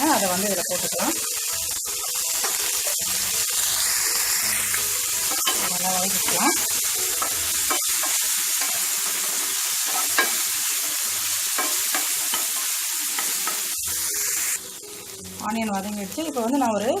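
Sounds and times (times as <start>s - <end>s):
onion sizzling in hot oil: 0.0s - 17.0s
spatula scraping and tapping pan: 4.7s - 10.5s, 11.5s - 13.7s.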